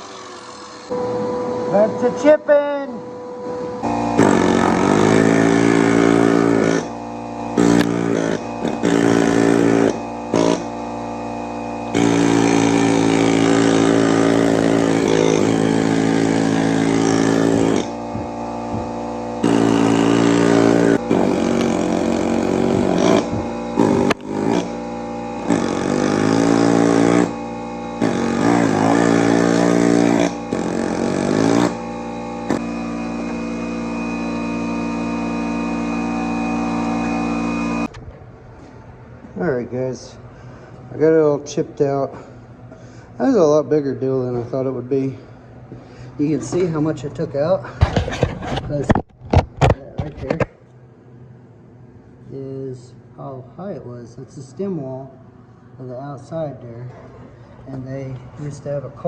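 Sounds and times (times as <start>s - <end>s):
steady hum: 0.0s - 59.0s
chipping hammer breaking concrete: 19.4s - 24.7s, 28.0s - 31.8s.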